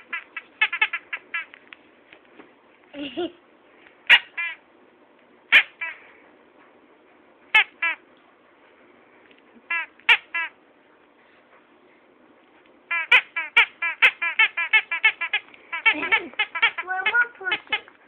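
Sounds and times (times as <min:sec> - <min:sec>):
rubber squeaky toy squeaking: 0:00.0 - 0:01.6, 0:04.1 - 0:04.6, 0:05.5 - 0:06.0, 0:07.6 - 0:08.0, 0:09.7 - 0:10.5, 0:12.9 - 0:17.9.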